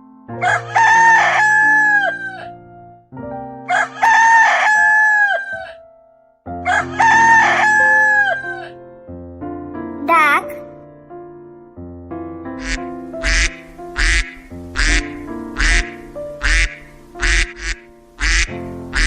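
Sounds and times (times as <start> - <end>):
soft background music: 0.0 - 19.0
rooster crowing: 0.5 - 2.4, 3.7 - 5.7, 6.7 - 8.4.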